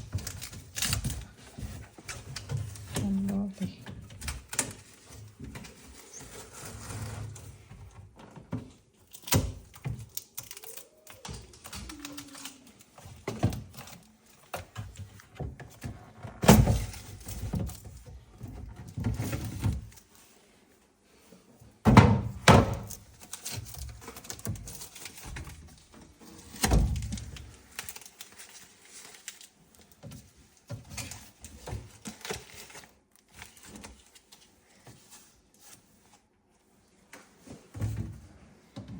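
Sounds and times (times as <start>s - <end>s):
thuds and knocks of fridge packaging: 14.7s - 20.0s, 21.8s - 27.5s, 37.5s - 38.9s.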